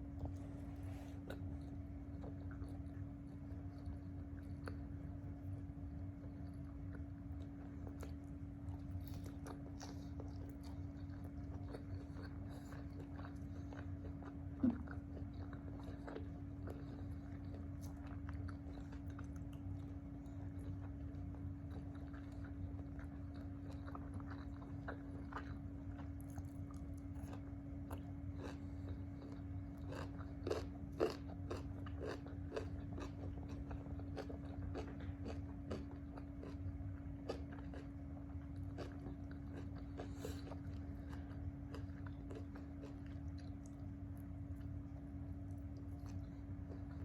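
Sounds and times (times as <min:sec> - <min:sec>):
steady low hum: 0:00.0 - 0:47.0
person biting and chewing: 0:26.2 - 0:36.6, 0:38.6 - 0:43.8.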